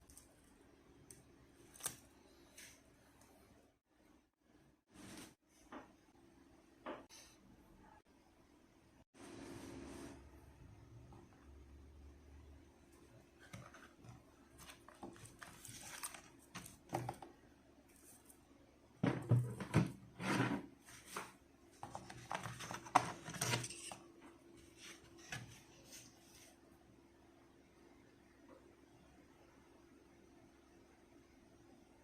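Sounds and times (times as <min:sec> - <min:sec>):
packaging being opened: 0:14.6 - 0:17.0.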